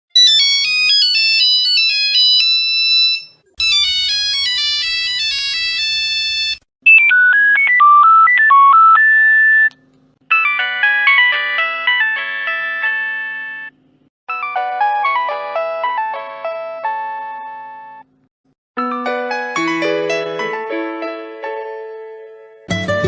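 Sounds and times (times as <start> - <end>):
mobile phone ringtone melodies: 0.2 - 9.7, 10.3 - 18.0.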